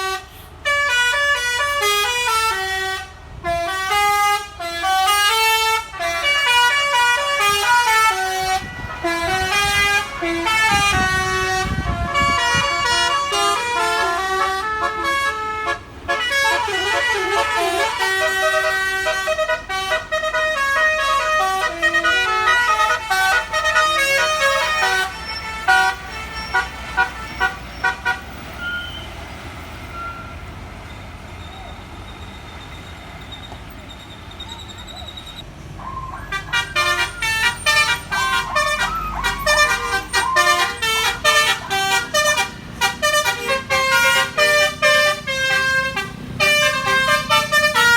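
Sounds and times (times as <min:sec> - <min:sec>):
musical air horn melody: 0:00.0 - 0:29.1, 0:36.2 - 0:47.9
road and engine noise: 0:00.0 - 0:47.9.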